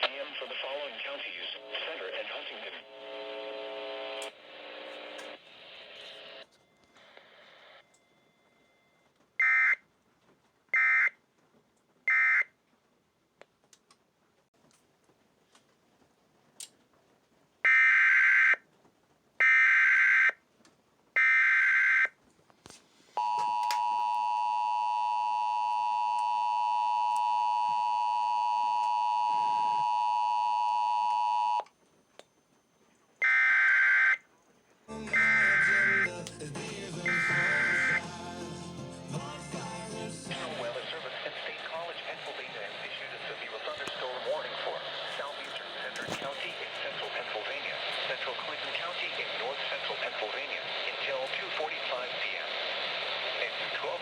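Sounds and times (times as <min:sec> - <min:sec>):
attention signal paired tones: 0:37.0 - 0:38.0
data bursts: 0:37.0 - 0:38.1.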